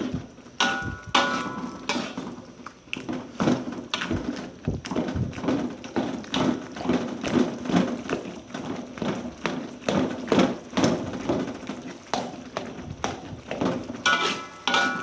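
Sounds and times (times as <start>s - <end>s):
spatula scraping metal pan: 0.6s - 2.4s, 14.0s - 15.0s.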